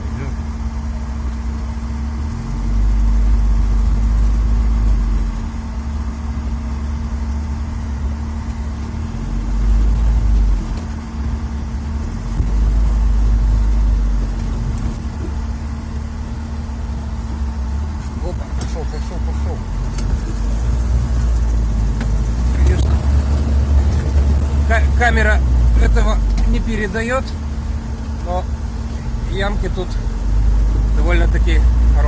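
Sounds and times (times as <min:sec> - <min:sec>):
truck engine rumbling: 0:00.0 - 0:32.0.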